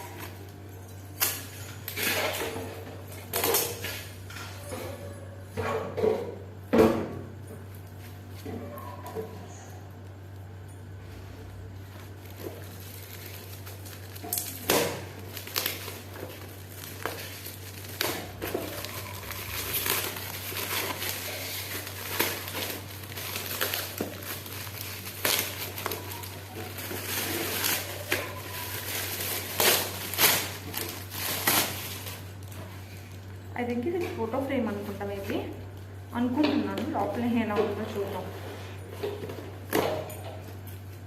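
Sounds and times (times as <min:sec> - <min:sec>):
wrapping paper crinkling: 0:11.7 - 0:33.5.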